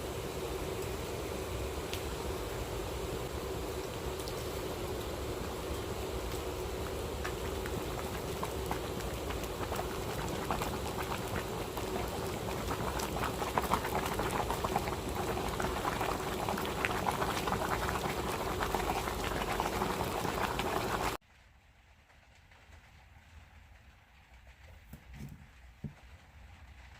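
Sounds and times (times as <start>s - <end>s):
liquid bubbling and fizzing: 0.0s - 21.2s.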